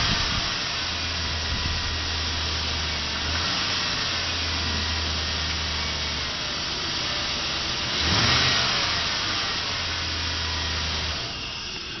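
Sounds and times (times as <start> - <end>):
engine knocking: 0.0 - 12.0
pickup engine running and revving: 0.0 - 12.0.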